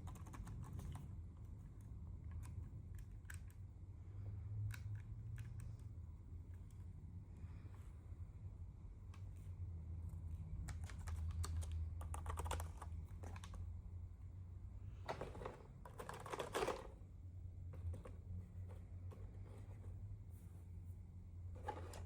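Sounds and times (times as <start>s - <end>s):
steady low hum: 0.0s - 22.0s
keyboard keys clicking: 10.6s - 13.6s.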